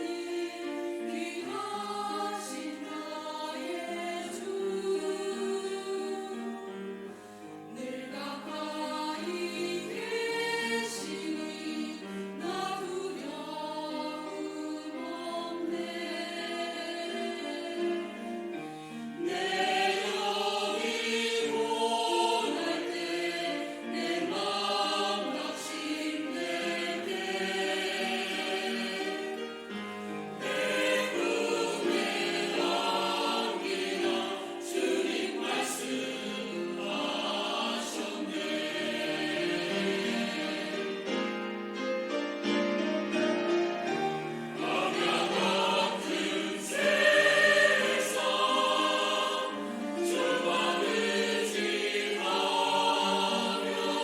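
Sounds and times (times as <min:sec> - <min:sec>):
church choir singing a hymn: 0:00.0 - 0:54.0.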